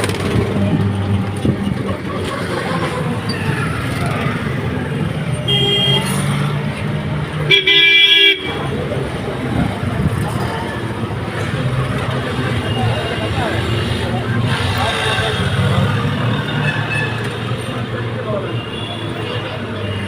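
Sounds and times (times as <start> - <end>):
road noise: 0.0 - 20.0
vehicle horn: 5.4 - 6.2, 7.5 - 8.6.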